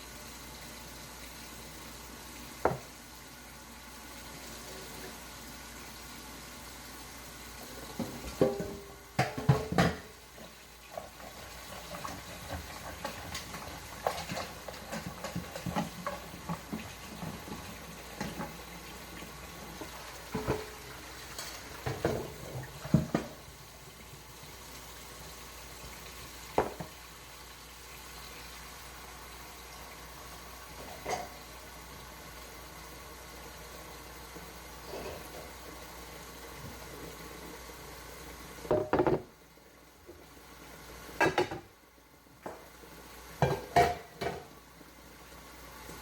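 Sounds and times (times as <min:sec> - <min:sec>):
dishes and pots clinking: 0:08.0 - 0:18.6, 0:19.8 - 0:23.4, 0:26.6 - 0:27.0, 0:30.8 - 0:31.4, 0:38.7 - 0:39.3, 0:41.2 - 0:41.7, 0:43.4 - 0:44.6.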